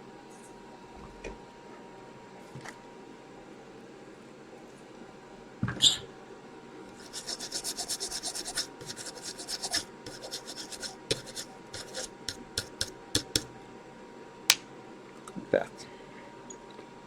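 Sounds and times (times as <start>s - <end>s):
rubbing strokes on circuit board: 7.0s - 13.4s.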